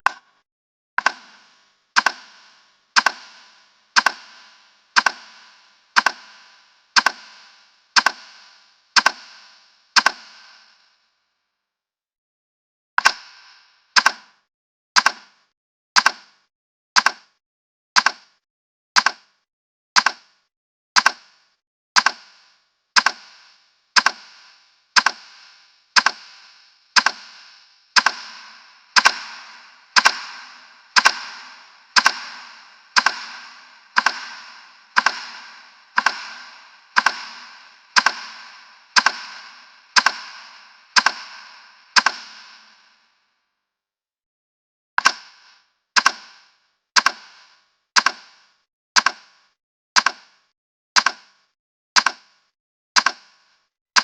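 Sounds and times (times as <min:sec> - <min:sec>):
timer ticking: 0:01.0 - 0:10.8, 0:13.0 - 0:14.4, 0:17.0 - 0:17.3, 0:18.0 - 0:18.4, 0:19.0 - 0:19.3, 0:20.0 - 0:20.4, 0:21.0 - 0:21.4, 0:22.0 - 0:43.0, 0:45.0 - 0:49.4, 0:50.0 - 0:50.4, 0:51.0 - 0:51.4.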